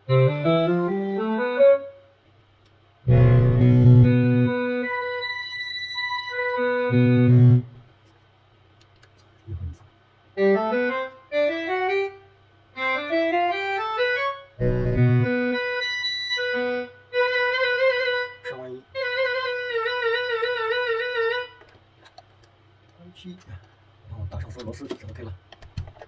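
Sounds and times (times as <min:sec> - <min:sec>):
electronic wind instrument notes: 0:00.0 - 0:02.1, 0:03.1 - 0:07.8, 0:10.4 - 0:12.2, 0:12.8 - 0:21.6
steady low hum: 0:00.0 - 0:25.5.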